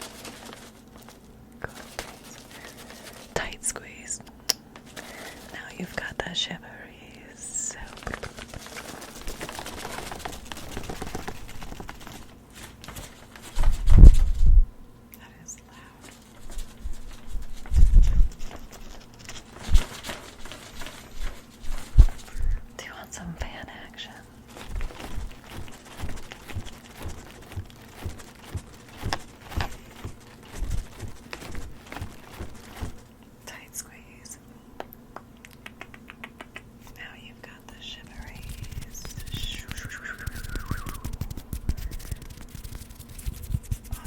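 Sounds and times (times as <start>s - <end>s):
hand fan puffs of air: 0.0s - 3.8s, 4.4s - 5.7s, 7.2s - 14.9s, 15.7s - 22.8s, 24.2s - 33.2s, 37.8s - 44.0s.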